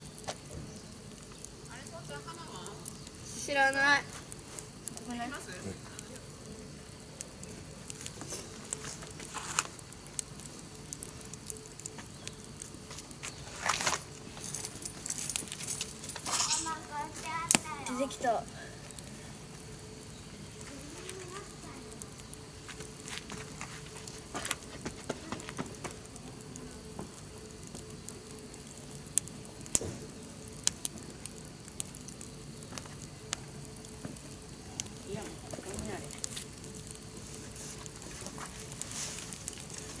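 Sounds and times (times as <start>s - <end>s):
wood fire crackling: 0.0s - 40.0s.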